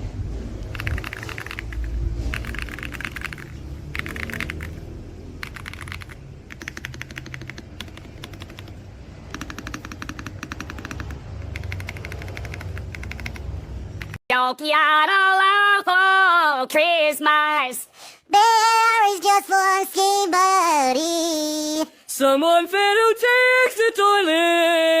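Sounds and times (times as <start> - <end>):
mechanical keyboard typing: 0.6 - 14.2.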